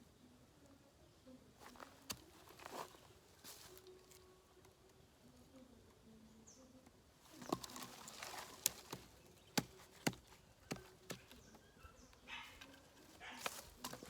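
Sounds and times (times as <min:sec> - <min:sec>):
knife chopping into firewood: 0:07.3 - 0:11.6, 0:13.4 - 0:14.0.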